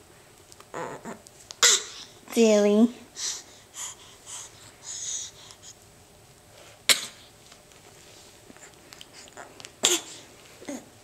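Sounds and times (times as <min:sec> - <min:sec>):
baby coughing: 0:01.6 - 0:02.1, 0:06.9 - 0:07.2, 0:09.8 - 0:10.8.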